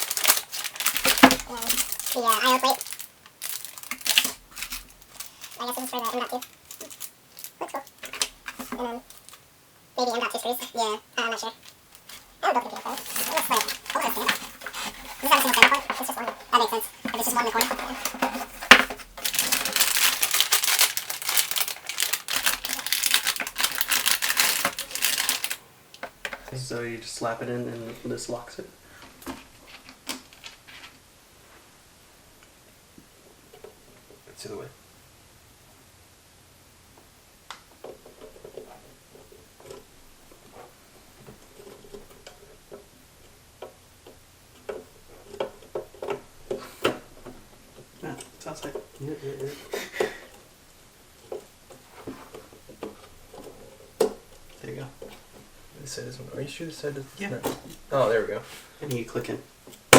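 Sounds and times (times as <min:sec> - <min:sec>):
plastic packaging crinkling: 0:00.0 - 0:09.4, 0:10.0 - 0:26.5.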